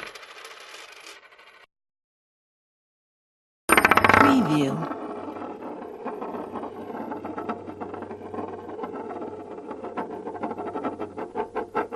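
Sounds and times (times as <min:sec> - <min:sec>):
metal coins clinking: 0:00.0 - 0:01.6.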